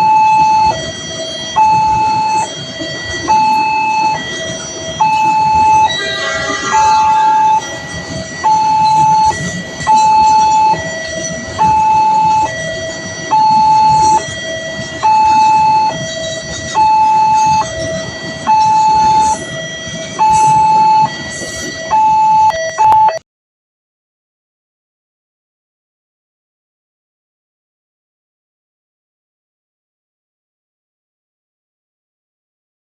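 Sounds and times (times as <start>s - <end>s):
two-tone crossing siren: 0.0s - 23.2s.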